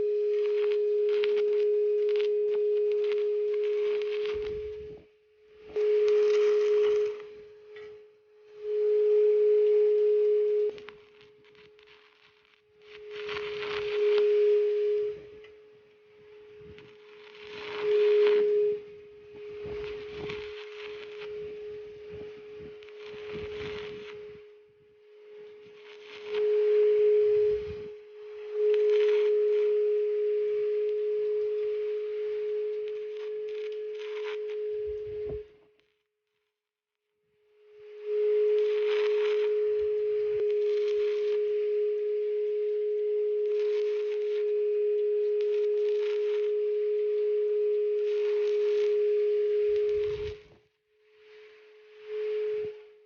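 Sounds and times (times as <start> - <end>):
steady high whine: 0.0 - 35.7, 37.4 - 53.0
welding arc crackling hiss: 2.9 - 4.6, 10.7 - 14.0, 19.3 - 21.3, 21.9 - 24.3.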